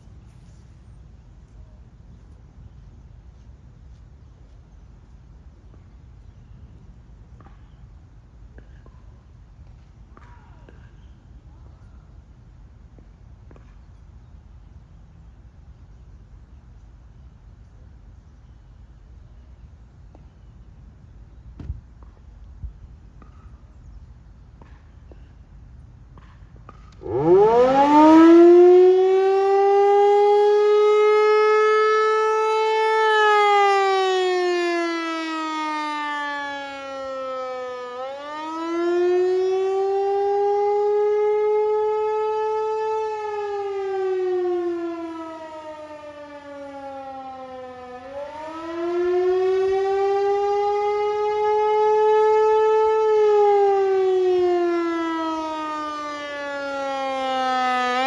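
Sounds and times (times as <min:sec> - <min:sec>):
outdoor warning siren wailing: 0:26.9 - 0:58.0.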